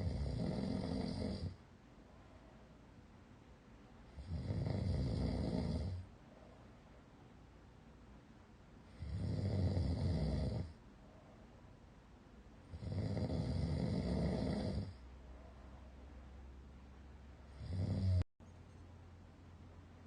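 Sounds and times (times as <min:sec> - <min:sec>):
person snoring loudly: 0:00.0 - 0:01.6, 0:04.2 - 0:06.0, 0:08.9 - 0:10.7, 0:12.7 - 0:15.0, 0:17.5 - 0:18.2.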